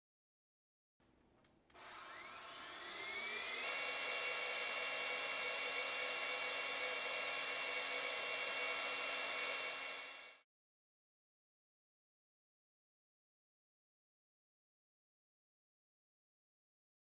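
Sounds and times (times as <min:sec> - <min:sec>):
vacuum cleaner motor whine: 0:01.8 - 0:10.4.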